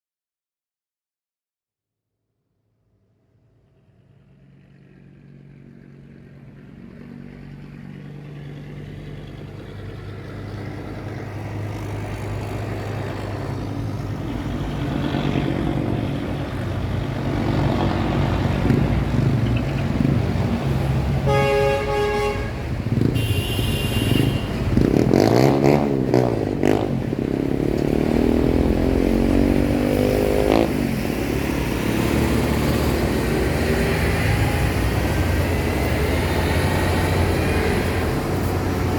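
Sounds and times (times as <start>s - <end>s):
vehicles passing: 4.8s - 38.9s
engines accelerating: 8.6s - 38.9s
vehicle horn honking: 21.1s - 25.5s.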